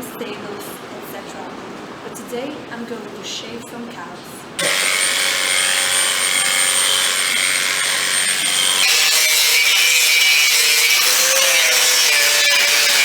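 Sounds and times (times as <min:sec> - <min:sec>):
electric clippers running: 0:04.6 - 0:13.0.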